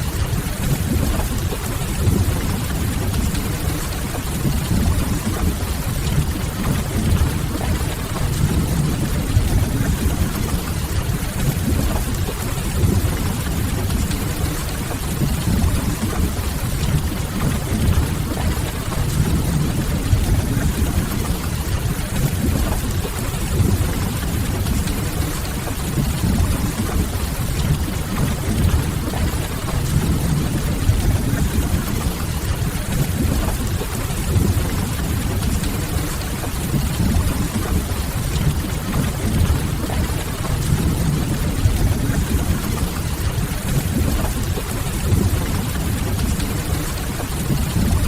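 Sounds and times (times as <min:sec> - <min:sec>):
heavy rain: 0:00.0 - 0:48.0.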